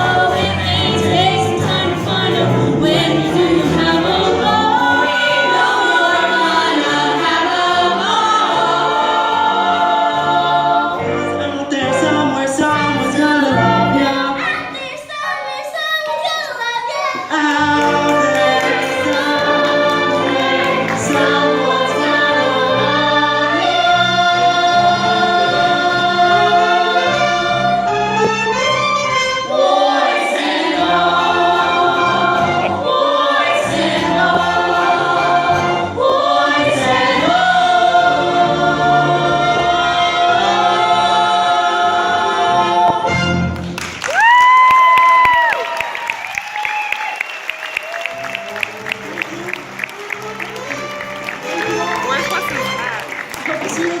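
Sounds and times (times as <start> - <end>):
choir singing sustained chords: 0.0 - 14.4, 17.9 - 43.5
low musical accompaniment: 0.0 - 14.6, 17.3 - 43.9, 48.3 - 54.0.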